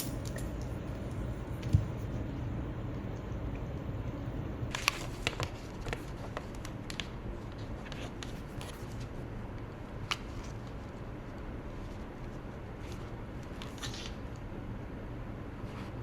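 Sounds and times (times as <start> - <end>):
paper and stationery clicks and taps: 4.7 - 8.8.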